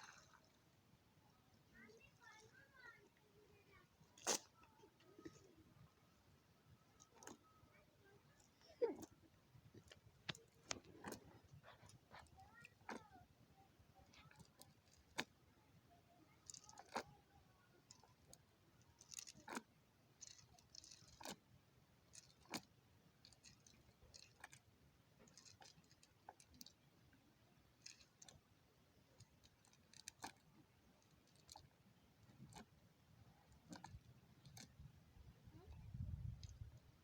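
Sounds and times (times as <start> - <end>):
faint clicks and taps: 7.0 - 13.3.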